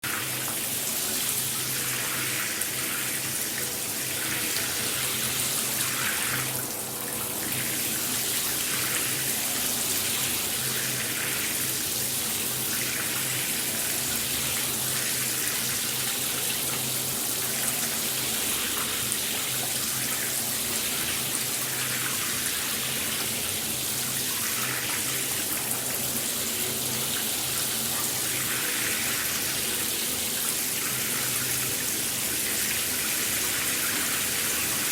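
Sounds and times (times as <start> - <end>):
shower water spraying: 0.0 - 26.2.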